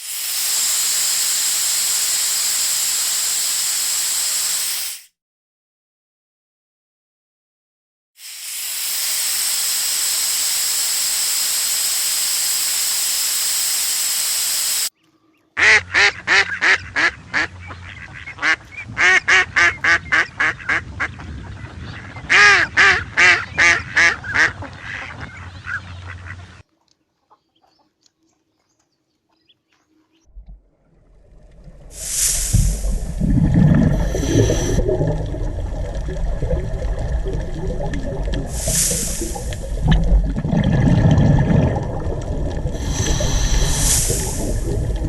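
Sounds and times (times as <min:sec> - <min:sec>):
steady hiss: 0:00.0 - 0:05.1, 0:08.2 - 0:14.9, 0:31.8 - 0:40.3, 0:42.4 - 0:45.0
ducks or geese honking: 0:15.6 - 0:26.6.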